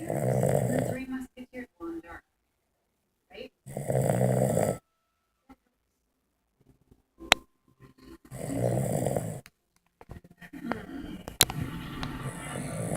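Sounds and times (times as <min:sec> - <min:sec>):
pet snoring: 0:00.0 - 0:01.2, 0:03.6 - 0:04.8, 0:08.3 - 0:09.5, 0:11.0 - 0:12.9.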